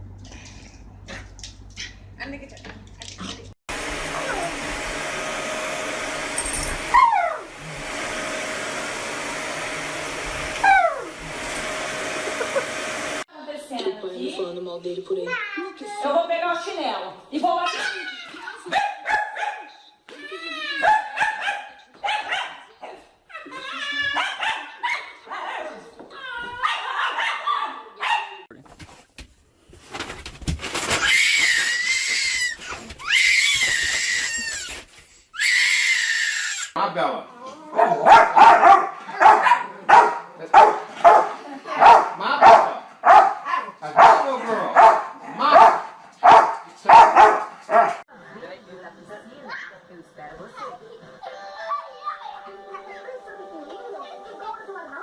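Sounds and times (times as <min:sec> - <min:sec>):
dog barking and yelping: 0:06.9 - 0:07.5, 0:10.6 - 0:11.1, 0:18.7 - 0:19.7, 0:20.8 - 0:23.0, 0:24.1 - 0:25.8, 0:26.6 - 0:28.5, 0:37.6 - 0:48.0
dog whining: 0:06.9 - 0:07.5, 0:10.6 - 0:11.1.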